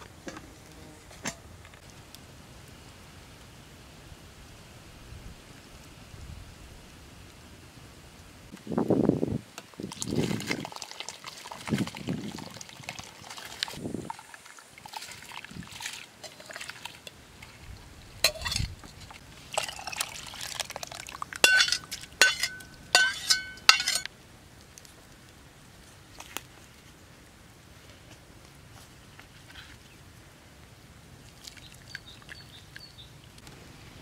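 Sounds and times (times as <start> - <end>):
water pouring and splashing: 9.6 - 24.1, 31.1 - 33.5.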